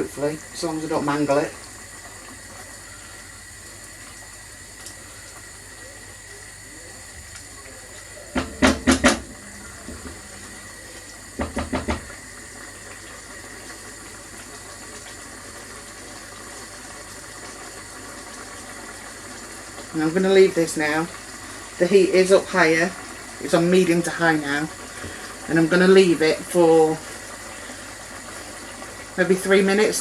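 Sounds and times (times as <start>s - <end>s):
sauce simmering in a pan: 0.0s - 30.0s
utensil knocking against pan: 8.3s - 10.3s, 11.4s - 12.1s.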